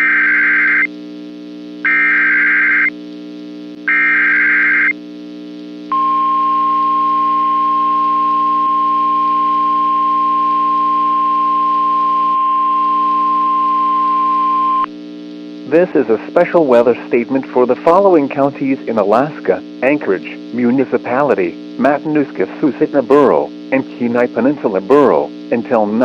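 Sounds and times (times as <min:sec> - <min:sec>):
steady warning alarm tone: 0:01.8 - 0:02.9, 0:03.9 - 0:04.9.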